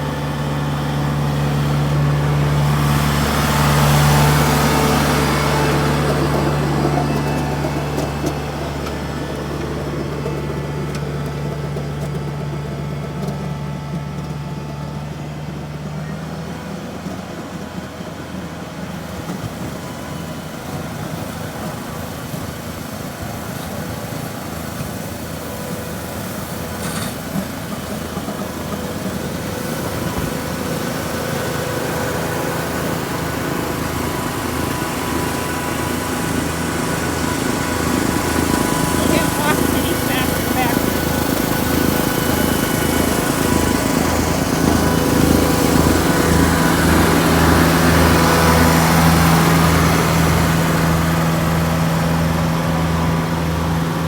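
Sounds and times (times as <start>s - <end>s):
tractor engine running: 0.0s - 54.0s.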